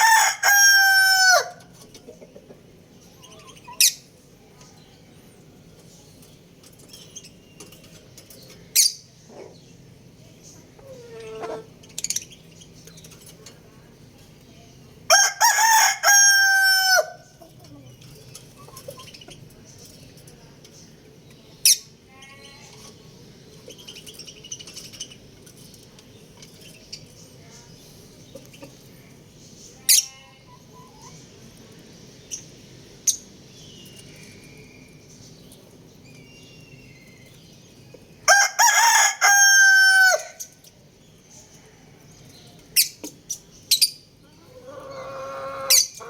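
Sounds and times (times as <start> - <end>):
rooster crowing: 0.0 - 1.7, 15.1 - 17.2, 38.3 - 40.4.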